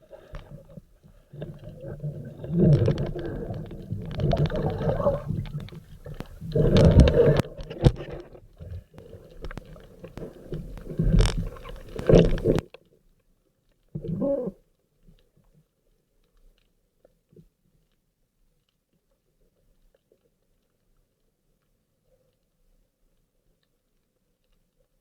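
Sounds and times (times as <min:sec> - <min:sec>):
muffled underwater rumbling: 0:00.0 - 0:12.6.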